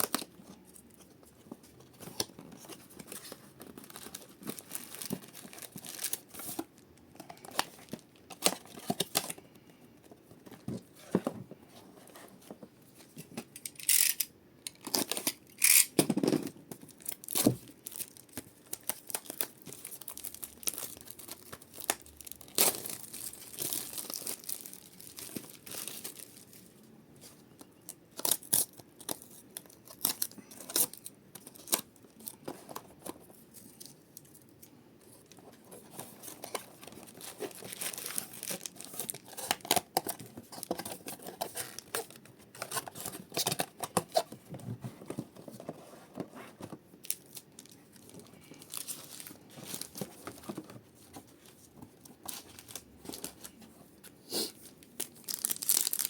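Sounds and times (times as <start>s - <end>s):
card wrappers tearing and crinkling: 2.0s - 6.8s, 16.9s - 26.6s, 35.9s - 44.3s, 47.0s - 50.8s, 52.2s - 53.6s, 54.4s - 56.0s.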